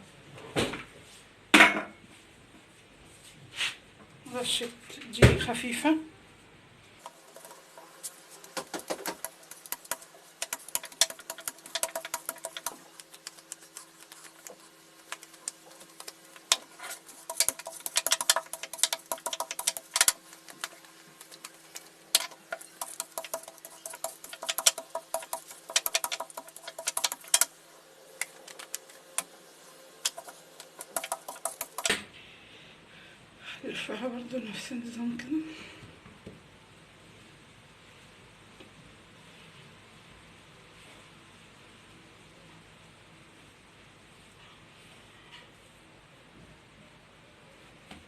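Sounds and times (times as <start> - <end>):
faint steady hum: 3.9 - 48.0
hands patting bread dough: 7.1 - 27.5, 28.2 - 29.3, 30.0 - 32.0.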